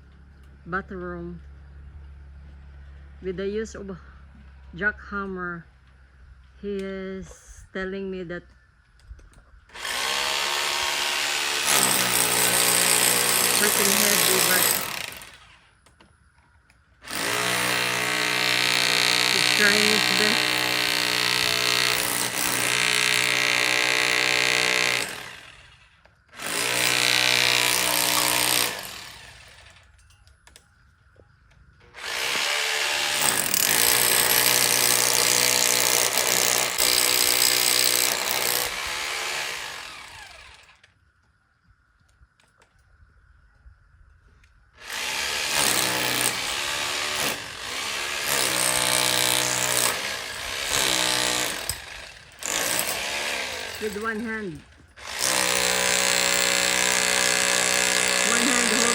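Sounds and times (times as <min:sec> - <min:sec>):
jackhammer chiselling into wall: 0:09.7 - 0:15.6, 0:17.0 - 0:29.8, 0:31.9 - 0:40.8, 0:44.8 - 0:58.9.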